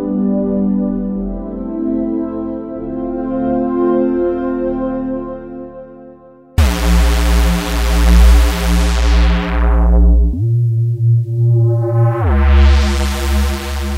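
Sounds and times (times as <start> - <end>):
bass-heavy synth note: 6.6 - 13.9.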